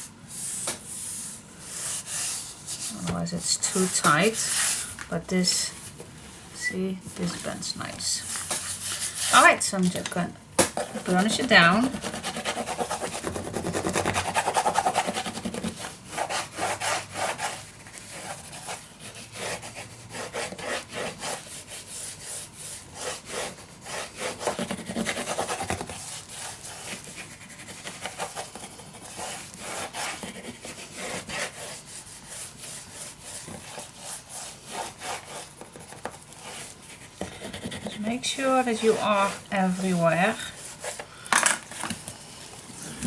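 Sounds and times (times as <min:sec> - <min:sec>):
cloth rubbed back and forth: 0:00.0 - 0:06.6, 0:07.2 - 0:09.7, 0:10.8 - 0:41.1.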